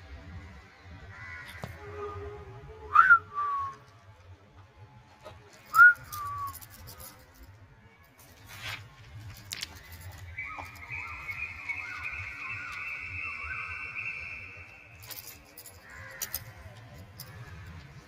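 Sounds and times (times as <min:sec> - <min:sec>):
person whistling dog recall: 0:05.7 - 0:06.6.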